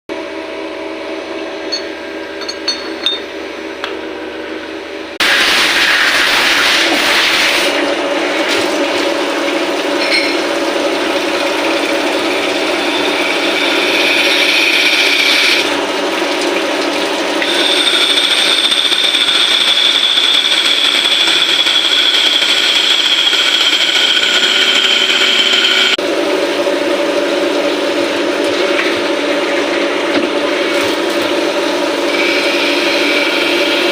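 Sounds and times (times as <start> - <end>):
lathe machine hum: 7.6 - 33.9
metal cutting noise: 11.2 - 15.8, 17.4 - 26.0, 30.6 - 33.9.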